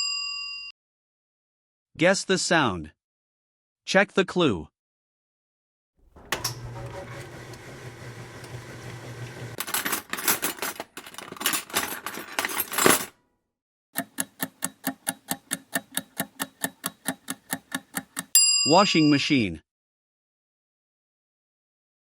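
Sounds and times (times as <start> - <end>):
washing machine motor hum: 6.0 - 9.8
washing machine churning: 6.1 - 10.5
timer ticking: 14.0 - 18.4.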